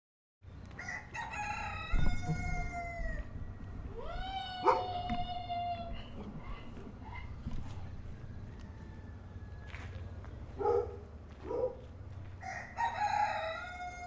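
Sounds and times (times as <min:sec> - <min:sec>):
rooster crowing: 0:00.8 - 0:06.1, 0:07.1 - 0:10.2, 0:12.4 - 0:14.0
low rumble: 0:01.8 - 0:10.5.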